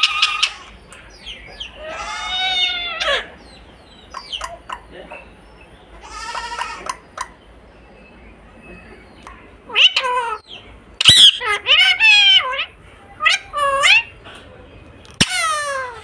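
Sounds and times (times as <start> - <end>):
parrot calling: 0.0 - 5.4, 6.0 - 7.4, 9.6 - 14.2, 15.2 - 16.0.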